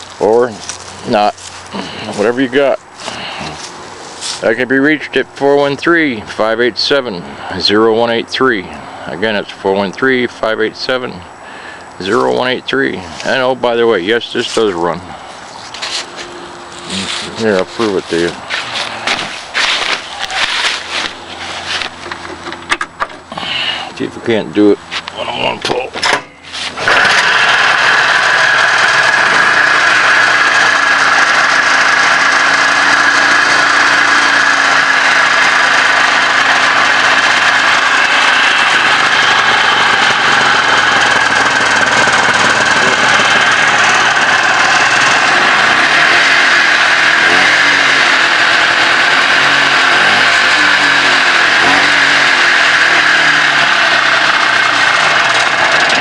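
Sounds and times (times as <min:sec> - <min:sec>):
snowmobile engine running: 0:00.2 - 0:03.8, 0:16.8 - 0:21.8, 0:26.5 - 0:56.0.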